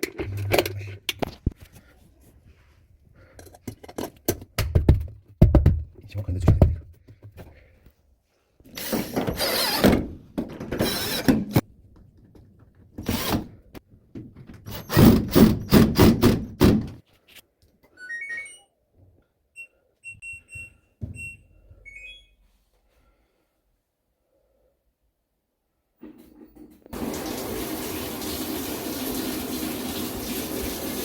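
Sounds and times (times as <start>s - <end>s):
washing machine beeping: 18.0s - 18.8s, 19.5s - 22.4s.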